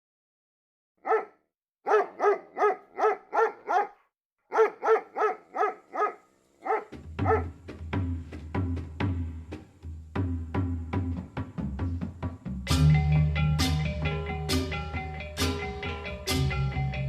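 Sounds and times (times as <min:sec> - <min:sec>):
dog barking sharply: 0:01.0 - 0:07.5
music with low beat: 0:06.9 - 0:17.0.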